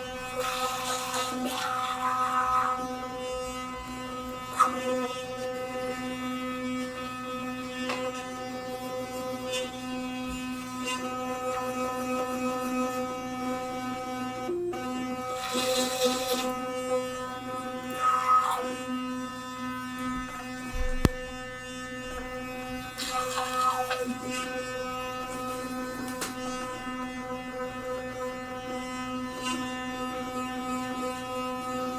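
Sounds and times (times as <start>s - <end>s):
electric toothbrush buzzing: 0.0s - 31.9s
brush scrubbing teeth: 0.1s - 8.4s, 15.1s - 31.6s.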